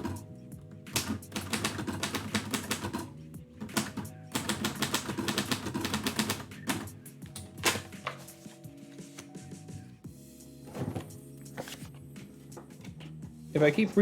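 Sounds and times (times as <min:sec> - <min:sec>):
quiet background music: 0:00.0 - 0:14.0
manual typewriter keys striking: 0:01.0 - 0:07.9.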